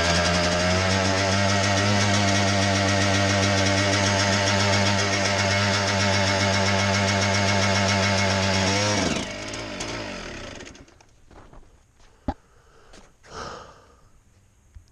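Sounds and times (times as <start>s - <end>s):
two-stroke engine winding down: 0.0s - 11.0s.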